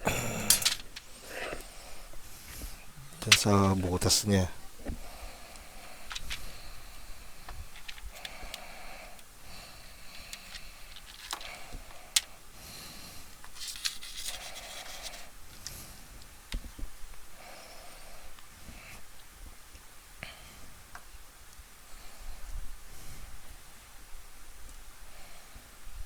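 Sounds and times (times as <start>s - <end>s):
power cord handling clicks: 0.4s - 1.0s.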